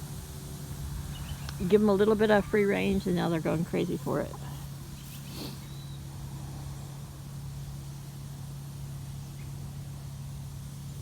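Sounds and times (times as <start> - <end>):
wind rumble on microphone: 0.0 - 5.1
low machine hum: 0.0 - 11.0.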